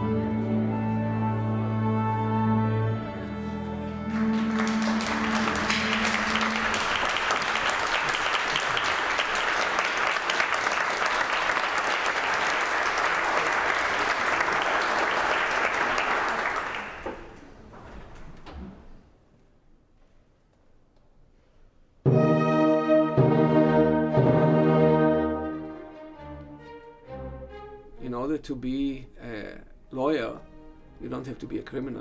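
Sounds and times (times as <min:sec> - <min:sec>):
held musical note: 0:00.1 - 0:08.0
audience applauding: 0:04.1 - 0:17.4.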